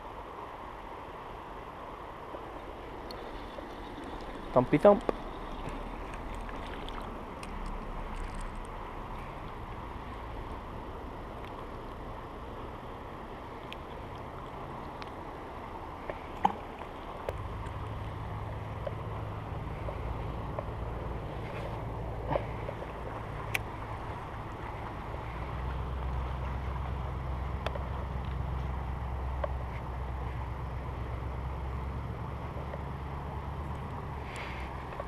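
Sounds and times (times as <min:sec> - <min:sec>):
creek rushing: 0:00.0 - 0:35.0
low rumble: 0:15.8 - 0:35.0.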